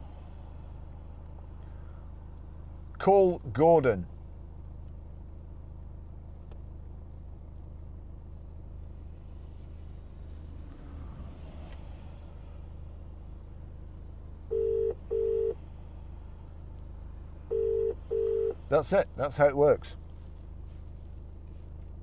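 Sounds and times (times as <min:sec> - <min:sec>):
low hum: 0:00.0 - 0:22.0
telephone ringing tone: 0:14.5 - 0:15.6, 0:17.5 - 0:18.6.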